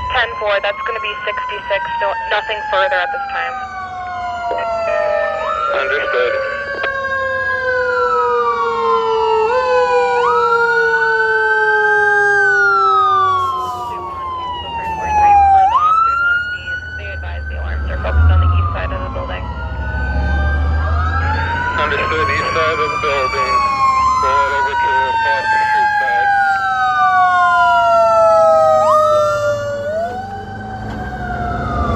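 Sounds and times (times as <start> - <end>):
emergency sirens wailing: 0.0 - 31.9
low vehicle rumble: 12.4 - 31.9.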